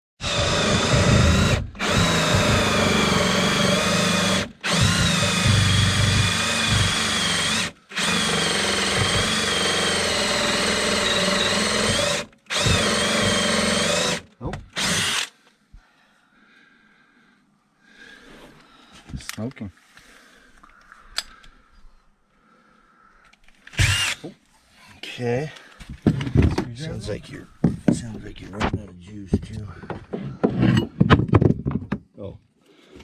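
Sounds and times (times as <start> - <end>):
electric drill cutting wood: 0.2 - 15.3, 23.8 - 24.3.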